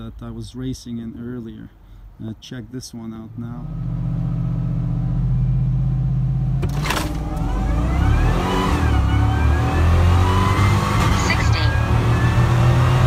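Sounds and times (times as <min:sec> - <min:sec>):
engine accelerating: 0:03.6 - 0:13.0
high supercharger whine: 0:03.6 - 0:13.0.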